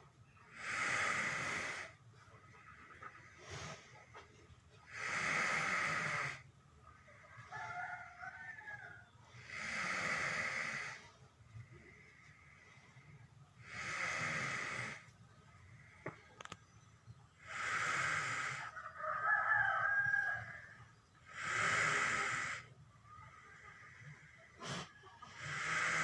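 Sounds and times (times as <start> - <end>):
cow snoring: 0.4 - 6.5, 9.3 - 16.5, 17.3 - 18.7, 21.2 - 26.0.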